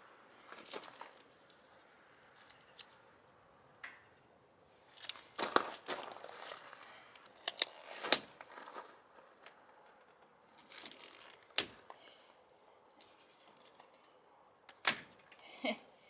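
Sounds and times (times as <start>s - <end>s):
duct tape snapping and rustling: 5.0s - 12.0s, 14.7s - 15.4s.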